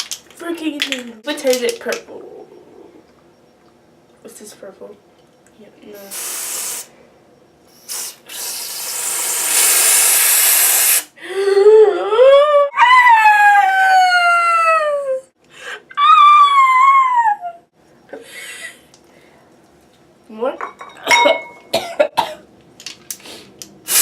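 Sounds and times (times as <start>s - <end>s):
spraying hiss: 6.0s - 6.9s, 7.7s - 11.1s, 23.3s - 24.0s.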